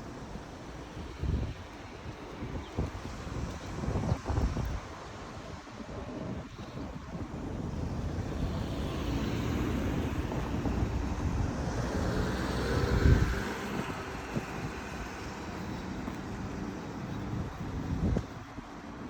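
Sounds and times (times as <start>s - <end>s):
wind buffeting microphone: 0.0s - 19.0s
vehicle passing by: 8.4s - 15.0s.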